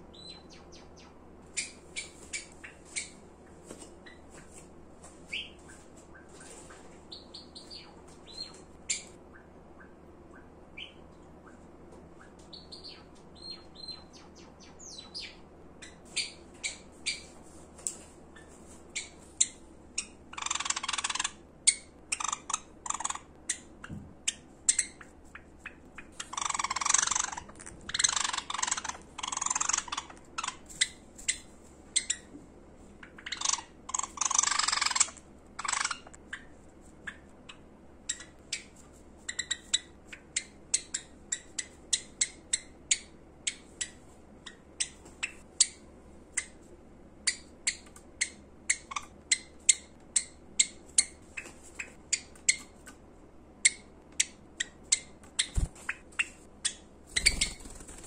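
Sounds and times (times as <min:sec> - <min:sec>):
sparrow chattering song: 0:00.1 - 0:03.2, 0:07.1 - 0:11.6, 0:12.2 - 0:17.3, 0:24.3 - 0:32.3, 0:53.6 - 0:58.0
sparrow chirping: 0:00.1 - 0:03.2, 0:05.3 - 0:06.3, 0:07.1 - 0:11.6, 0:12.2 - 0:17.3, 0:18.4 - 0:23.7, 0:24.3 - 0:32.3, 0:53.6 - 0:58.0.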